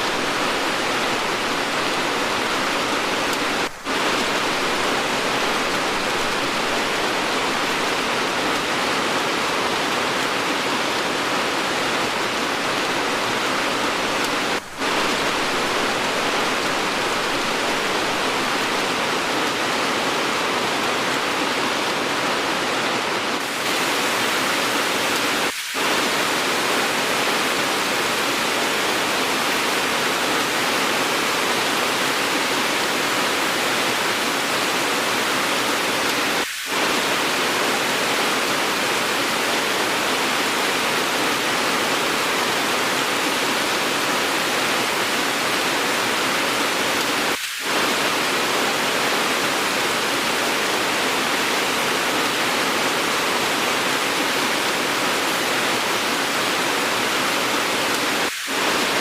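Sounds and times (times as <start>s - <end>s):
heavy rain hissing: 0.0s - 59.0s.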